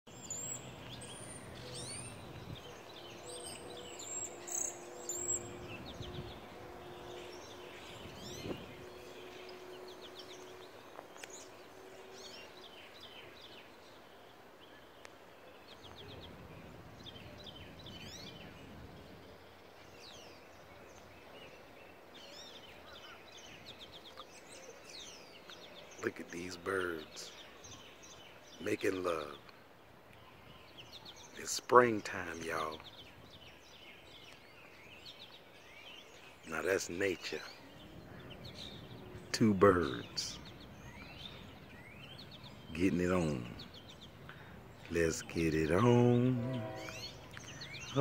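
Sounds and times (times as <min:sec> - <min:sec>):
outdoor background noise: 0:00.0 - 0:48.0
small birds chirping: 0:00.1 - 0:48.0
faint steady drone: 0:00.2 - 0:23.7.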